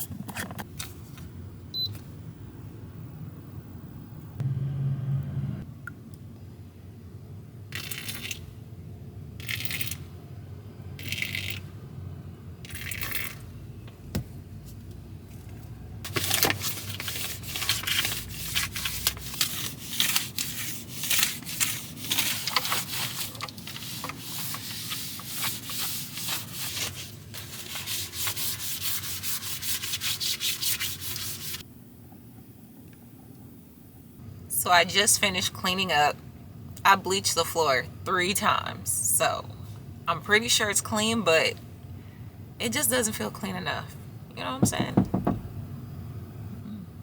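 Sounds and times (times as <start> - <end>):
rapid rubbing strokes: 17.1 - 31.6.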